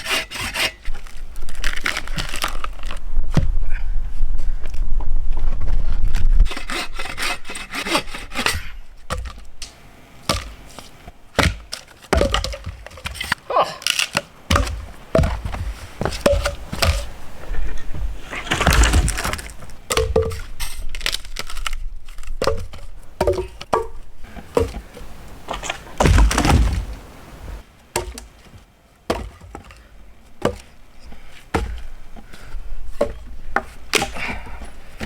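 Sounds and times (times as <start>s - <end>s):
sticks breaking with cracks: 11.4s - 15.3s, 18.4s - 22.8s.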